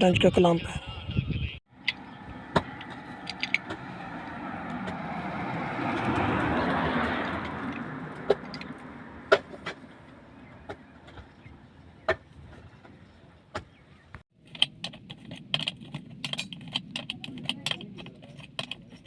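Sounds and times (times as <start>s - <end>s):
road vehicle passing: 1.7s - 12.0s.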